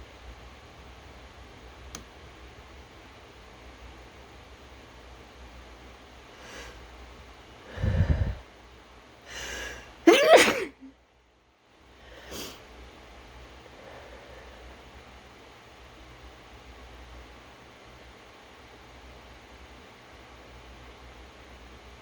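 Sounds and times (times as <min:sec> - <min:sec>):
heavy in-breaths: 0:07.6 - 0:08.5, 0:09.3 - 0:10.8, 0:12.0 - 0:12.6
person sneezing: 0:10.1 - 0:10.9.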